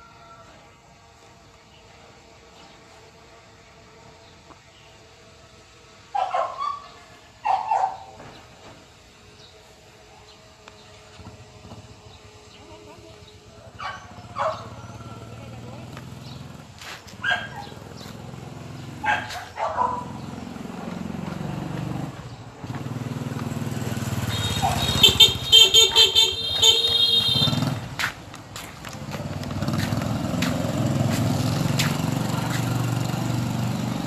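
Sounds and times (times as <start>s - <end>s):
vehicle engine running: 8.2s - 34.0s
horn beeping short toots: 24.2s - 27.9s.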